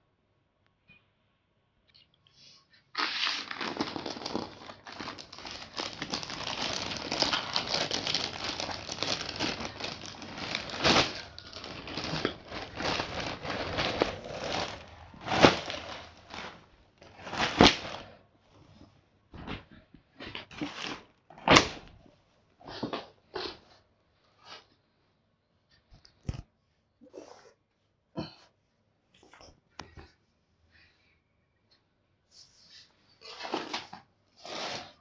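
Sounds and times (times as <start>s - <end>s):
packaging crinkling: 3.0s - 18.1s
packaging ripping: 3.0s - 18.1s.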